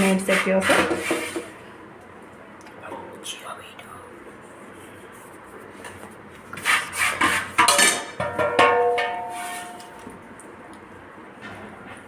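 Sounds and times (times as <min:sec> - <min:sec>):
metal utensils clattering: 0:07.2 - 0:10.0.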